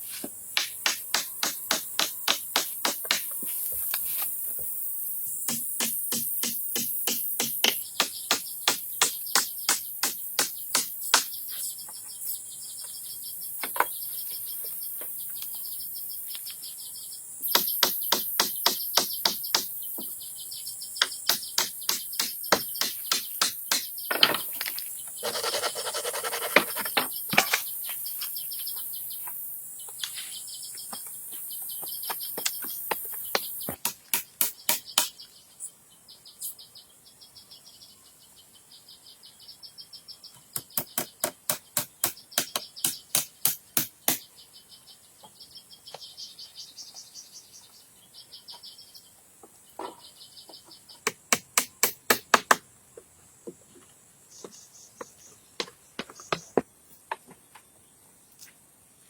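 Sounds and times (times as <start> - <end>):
insects chirping: 0.0 - 59.0
birds chirping: 0.3 - 51.9, 52.8 - 58.6
hand tools striking: 0.6 - 3.5.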